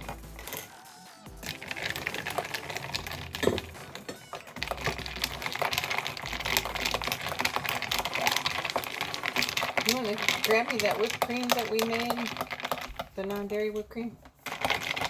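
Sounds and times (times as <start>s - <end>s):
spoon clinking against glass jar: 1.4s - 13.4s.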